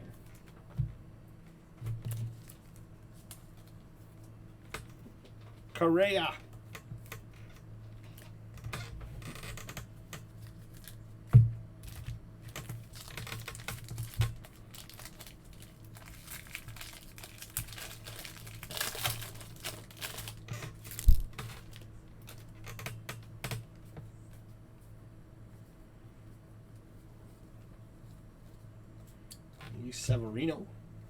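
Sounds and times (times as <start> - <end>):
low electrical hum: 0.0 - 31.0
foil wrappers crinkling and tearing: 10.4 - 11.1, 11.9 - 22.6.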